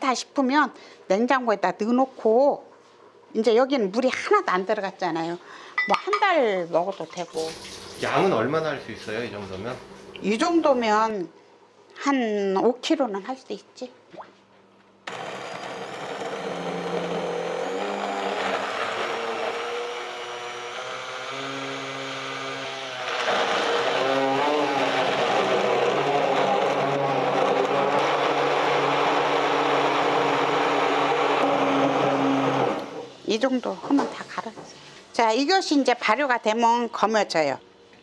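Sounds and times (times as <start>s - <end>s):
electric blender grinding: 7.4s - 11.1s, 15.1s - 33.2s.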